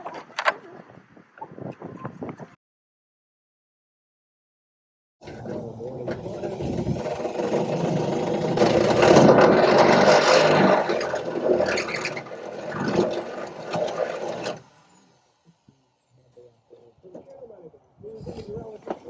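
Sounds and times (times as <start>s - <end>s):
electric drill boring a hole: 5.4s - 16.0s.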